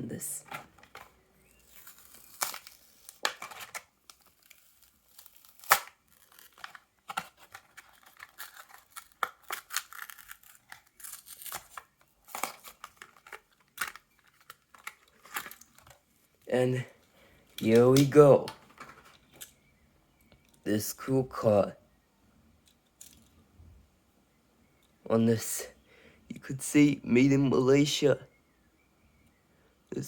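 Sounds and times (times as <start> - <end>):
plastic crinkling: 0.4 - 16.4
card tearing: 0.7 - 16.0.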